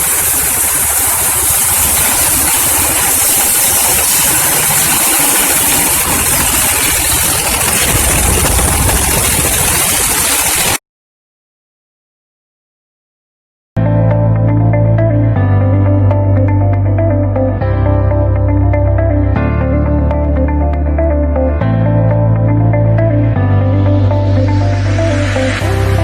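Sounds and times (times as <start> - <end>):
chopping machine droning: 0.0 - 10.8.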